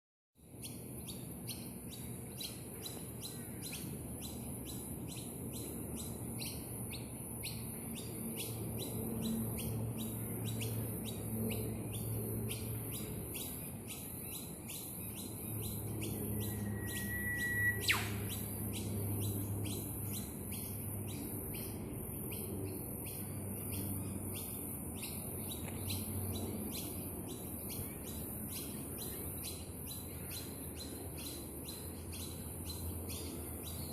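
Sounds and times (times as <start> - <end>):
birds chirping: 0.5 - 33.9
clear whistle: 16.4 - 18.3.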